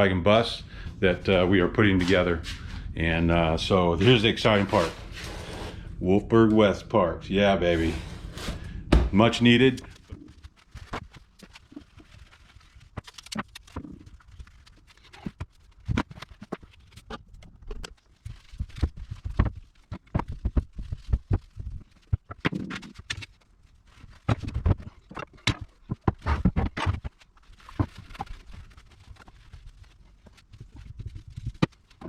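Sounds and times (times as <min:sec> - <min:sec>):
parts and packaging clicking: 0:09.3 - 0:32.0.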